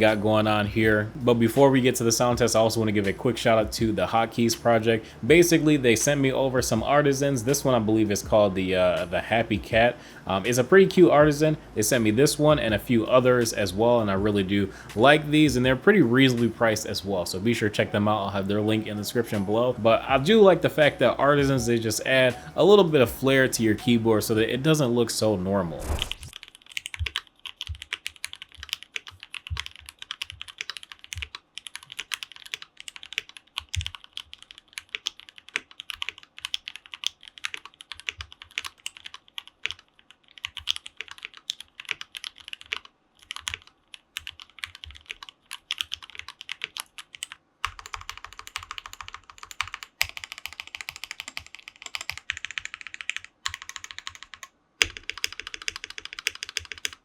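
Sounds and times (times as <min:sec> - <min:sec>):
mechanical keyboard typing: 0:25.8 - 0:57.0.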